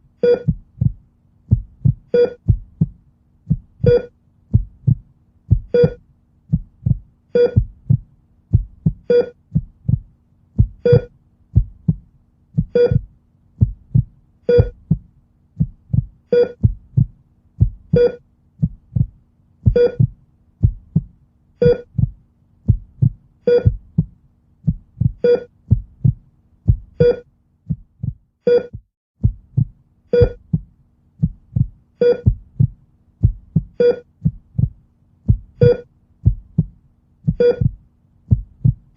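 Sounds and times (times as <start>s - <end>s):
faint steady hum: 0.0s - 38.9s
heart monitor beep: 0.2s - 2.9s, 3.6s - 6.0s, 6.8s - 10.0s, 10.6s - 12.0s, 12.6s - 15.0s, 15.9s - 18.2s, 18.9s - 22.1s, 22.7s - 24.1s, 24.7s - 27.3s, 28.5s - 28.9s, 29.6s - 30.6s, 31.2s - 34.7s, 35.3s - 36.7s, 37.3s - 38.8s
heartbeat thumps: 0.2s - 38.9s.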